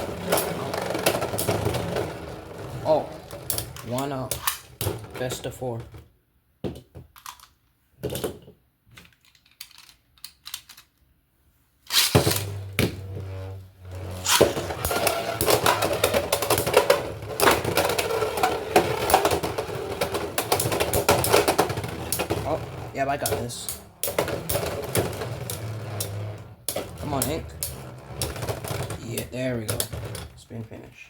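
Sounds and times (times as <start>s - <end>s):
spinning top launch: 11.9s - 13.0s.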